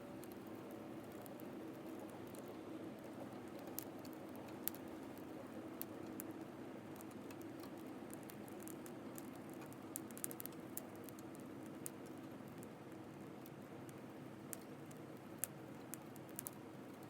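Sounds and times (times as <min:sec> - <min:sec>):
campfire crackling and popping: 0:00.2 - 0:17.0.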